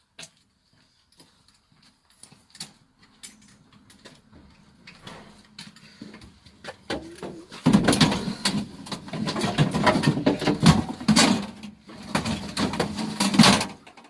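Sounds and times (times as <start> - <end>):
scrap clattering and rattling: 3.2 - 14.0.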